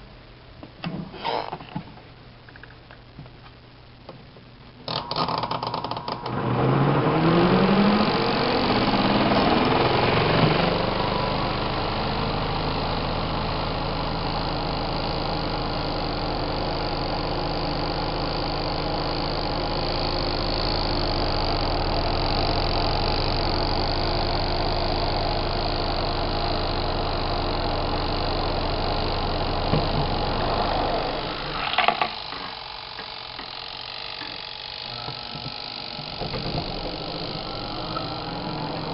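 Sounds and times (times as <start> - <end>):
washing machine motor humming: 4.8 - 38.9.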